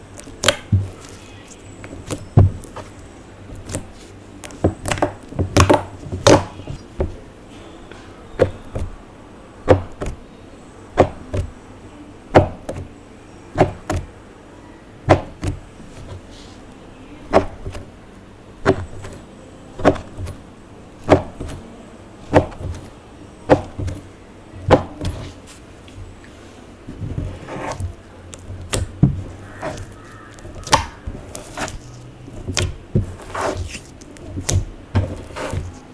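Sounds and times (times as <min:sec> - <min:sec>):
slime popping: 0:27.0 - 0:35.8.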